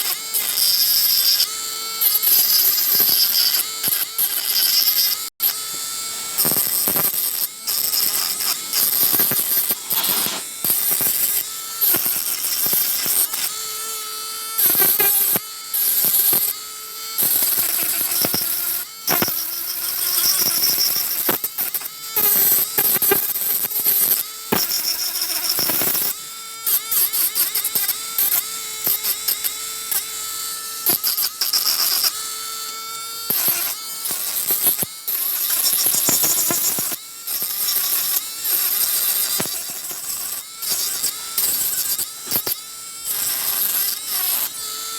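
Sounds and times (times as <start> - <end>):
electric sanding machine whine: 0.0 - 44.9.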